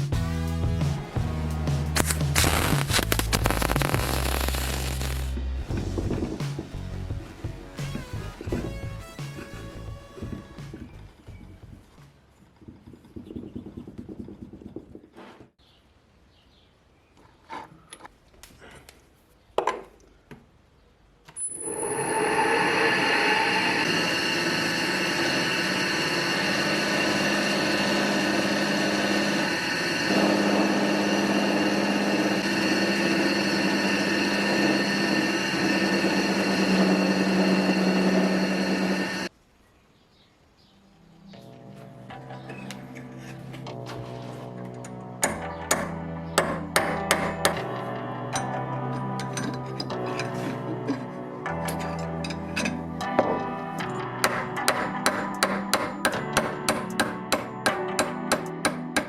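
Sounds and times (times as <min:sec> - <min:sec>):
electric power tool whining: 0:21.6 - 0:39.3.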